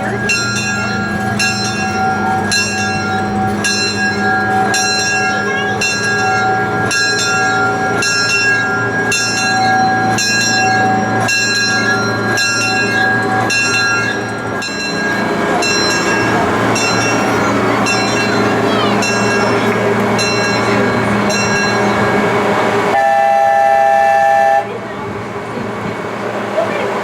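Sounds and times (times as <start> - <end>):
locomotive bell ringing: 0.0 - 27.0
train rumbling: 0.0 - 27.0.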